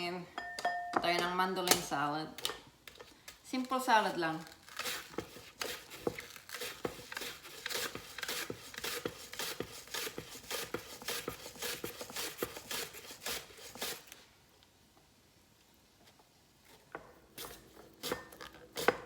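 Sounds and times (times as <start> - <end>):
mandoline slicing vegetables: 4.6 - 14.2, 17.3 - 19.0.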